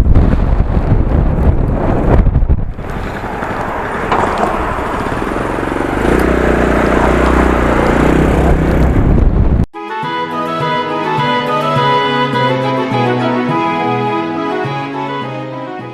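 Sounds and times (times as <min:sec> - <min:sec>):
wind on microphone: 0:00.0 - 0:09.7
scooter engine running: 0:02.8 - 0:09.6.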